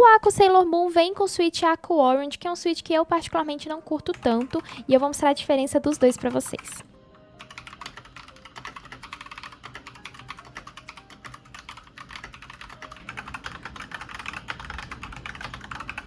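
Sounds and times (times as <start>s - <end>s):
mechanical keyboard typing: 3.9s - 5.1s, 5.9s - 16.0s.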